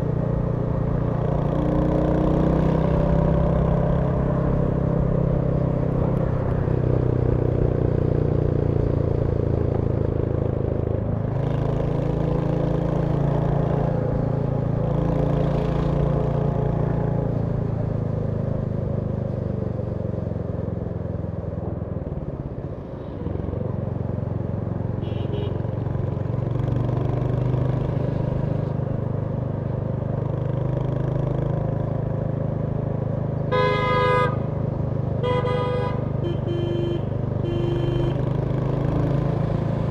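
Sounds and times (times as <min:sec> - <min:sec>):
motorcycle engine running: 0:23.7 - 0:39.9
vehicle horn short toots: 0:25.0 - 0:25.6, 0:33.5 - 0:34.5, 0:35.2 - 0:38.3.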